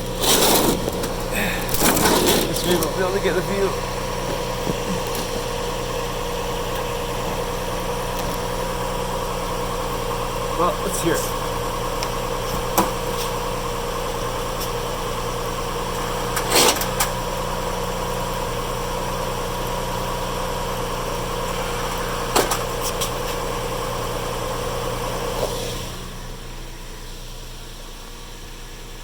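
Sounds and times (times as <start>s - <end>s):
drivetrain grinding: 0.0s - 27.0s
short clunks: 12.0s - 13.4s, 21.6s - 23.4s.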